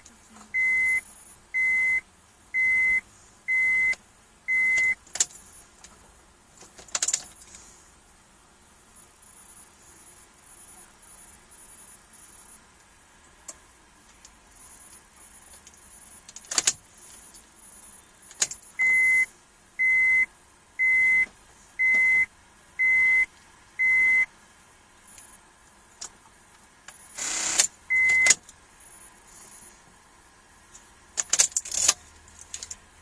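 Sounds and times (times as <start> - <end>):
car warning beeper: 0.0 - 5.0, 18.8 - 24.3, 27.2 - 28.4.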